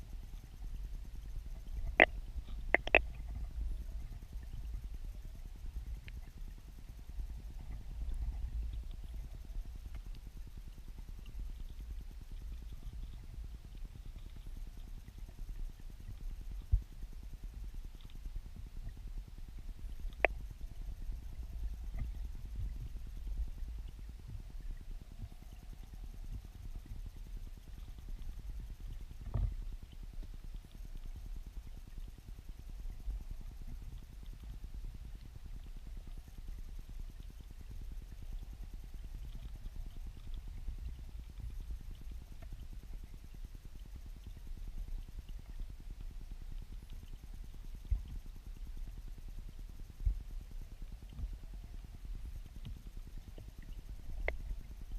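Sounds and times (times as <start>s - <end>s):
turbulent water underwater rumble: 0.0s - 54.9s
faint clicks: 1.5s - 5.0s, 5.6s - 6.5s, 7.1s - 17.0s, 19.6s - 54.9s
underwater knock: 2.7s - 3.0s.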